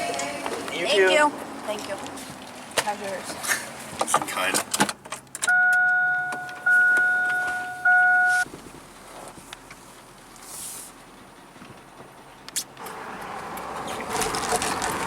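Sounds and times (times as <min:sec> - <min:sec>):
car warning chime: 0:05.5 - 0:08.5.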